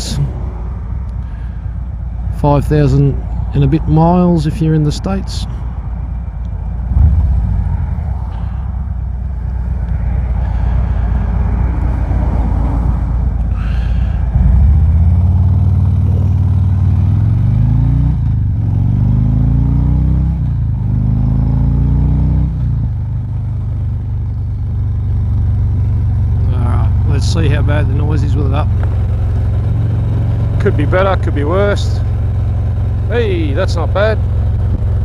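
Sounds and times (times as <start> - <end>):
motorcycle engine accelerating: 0.0 - 35.0
wind noise rumble: 6.6 - 16.8.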